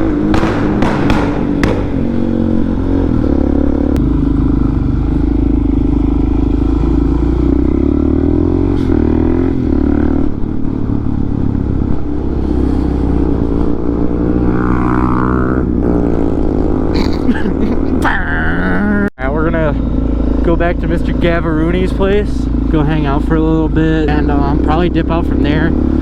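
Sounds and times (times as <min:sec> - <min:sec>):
motorcycle engine running: 0:00.0 - 0:26.0.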